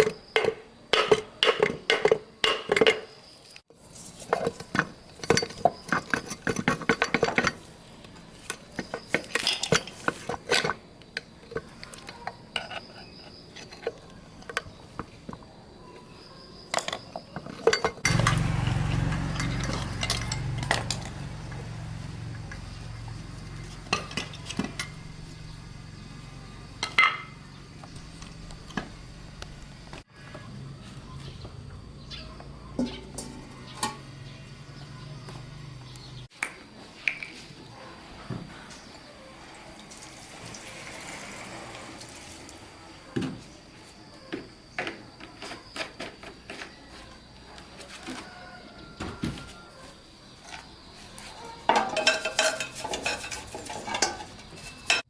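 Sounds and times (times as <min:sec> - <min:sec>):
metal tools clinking: 0:04.1 - 0:10.8, 0:16.7 - 0:25.4, 0:26.8 - 0:27.4, 0:32.8 - 0:34.4, 0:51.4 - 0:55.0.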